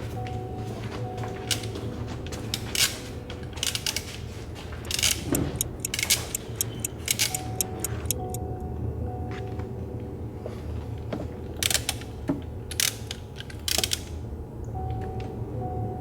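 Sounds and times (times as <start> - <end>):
sharp clicks and clinks: 4.8 - 8.4.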